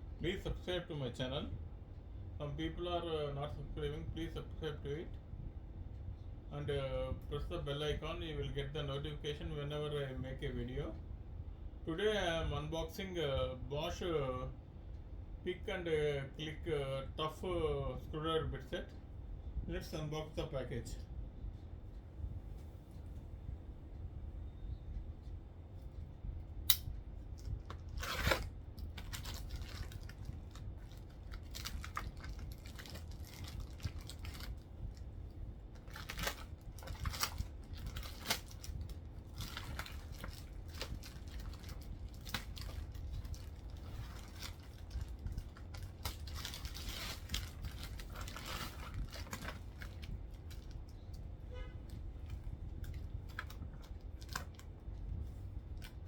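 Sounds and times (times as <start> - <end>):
plastic crinkling and rustling: 27.4 - 35.1, 35.7 - 51.2, 51.8 - 56.0
packaging being torn open: 27.6 - 34.6, 35.8 - 50.8.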